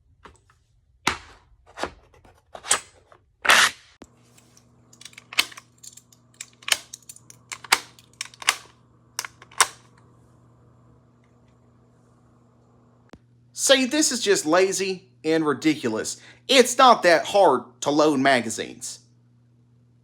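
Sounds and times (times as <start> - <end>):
cartridges clacking into magazines: 4.9 - 9.8.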